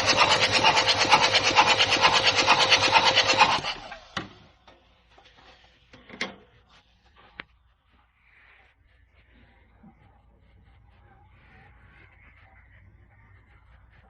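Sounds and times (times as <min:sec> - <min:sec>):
loud fast mechanical rattle: 0:00.0 - 0:04.1.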